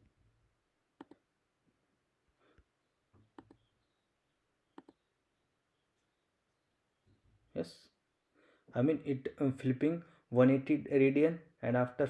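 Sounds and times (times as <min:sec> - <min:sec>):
computer mouse clicks: 0:01.0 - 0:01.2, 0:03.2 - 0:03.7, 0:04.8 - 0:05.0.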